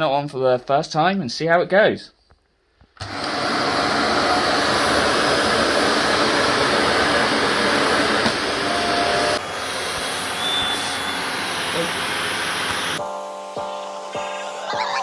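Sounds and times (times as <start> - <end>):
vacuum cleaner motor whirring: 3.0 - 15.0.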